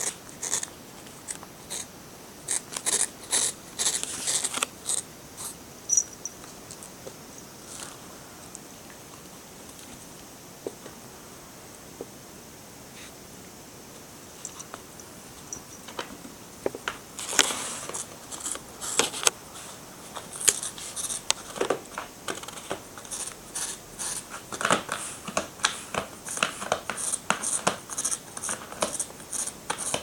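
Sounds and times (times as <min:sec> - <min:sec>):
cat scratching a claw scratcher: 0:00.0 - 0:05.6, 0:22.4 - 0:30.0.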